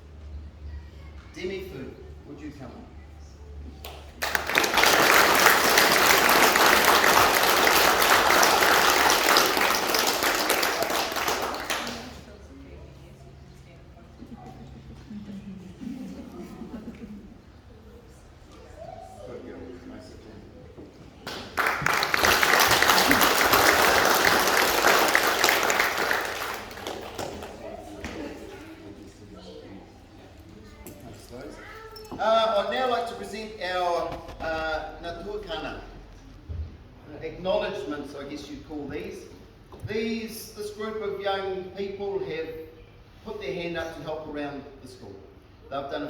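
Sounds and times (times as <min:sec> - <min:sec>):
audience applauding: 0:04.2 - 0:12.3, 0:21.3 - 0:28.2.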